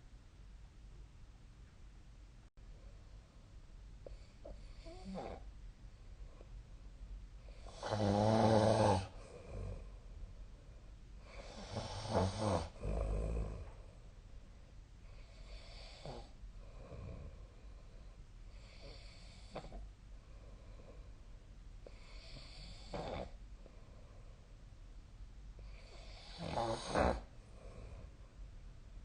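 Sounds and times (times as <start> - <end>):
quiet breaths: 2.6 - 29.0
person snoring: 4.4 - 5.4, 7.5 - 9.9, 11.2 - 13.8, 15.2 - 17.4, 21.9 - 23.4, 25.6 - 28.1.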